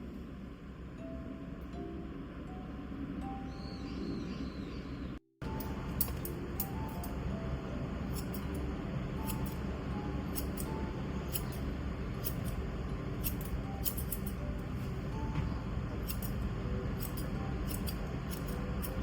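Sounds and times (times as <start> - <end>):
grooming scissors snipping: 8.1 - 9.6, 10.3 - 12.6, 13.2 - 14.4, 17.0 - 19.0.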